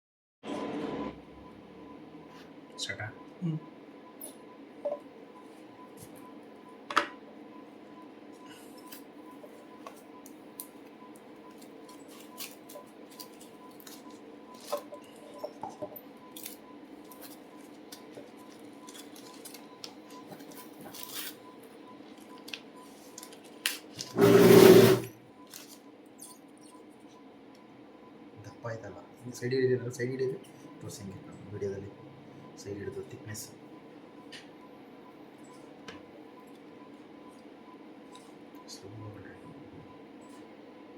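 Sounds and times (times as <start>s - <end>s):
packaging clicks and rustles: 11.5s - 15.2s, 16.3s - 24.2s, 25.4s - 25.8s.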